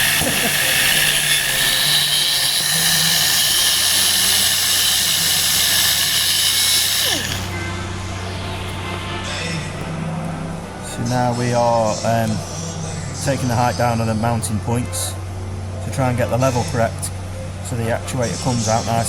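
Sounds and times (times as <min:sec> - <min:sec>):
rotary tool grinding plastic: 0:00.0 - 0:07.6.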